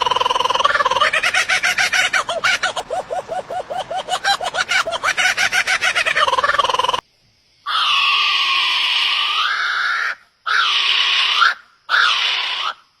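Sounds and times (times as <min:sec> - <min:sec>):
bird screeching calls: 0:00.0 - 0:07.0, 0:07.7 - 0:12.8
rapid pulsing bird call: 0:00.0 - 0:07.0.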